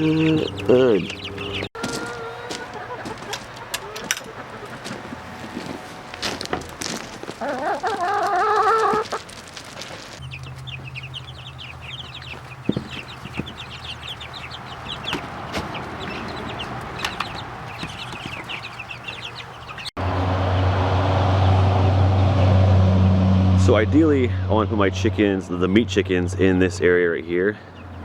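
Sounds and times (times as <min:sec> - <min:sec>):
chicken calling: 0:00.0 - 0:06.0, 0:06.9 - 0:09.4, 0:10.2 - 0:22.5
chicks peeping: 0:00.0 - 0:22.6, 0:25.1 - 0:28.0
low hum: 0:20.0 - 0:26.9.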